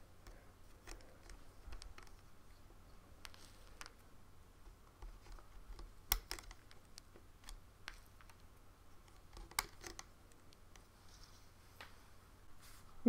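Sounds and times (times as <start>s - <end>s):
rubber bands clicking on plastic pins: 0.2s - 2.3s, 4.7s - 10.9s.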